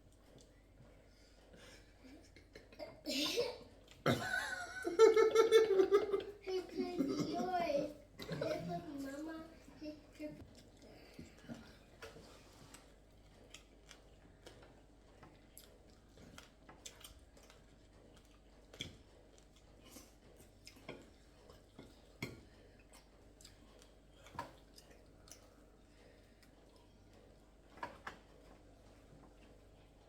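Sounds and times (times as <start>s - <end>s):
chewing sounds: 10.4s - 30.0s.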